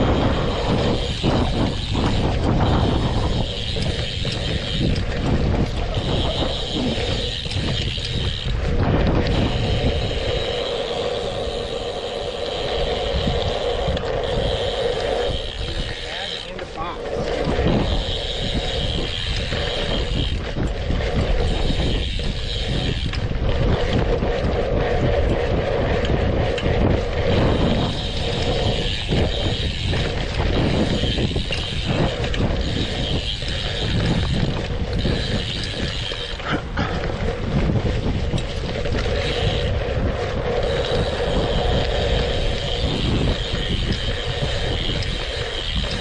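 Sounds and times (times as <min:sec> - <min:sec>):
bike tyres rumbling over dirt: 0:00.0 - 0:46.0
freewheel hub buzzing: 0:00.0 - 0:46.0.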